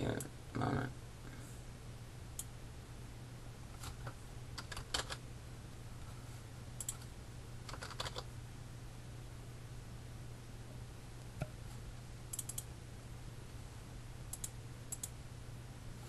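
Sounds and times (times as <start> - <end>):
steady low hum: 0.0 - 16.0
keyboard keystrokes: 4.6 - 5.2, 7.7 - 8.3
mouse clicks: 12.3 - 12.7, 14.3 - 15.2.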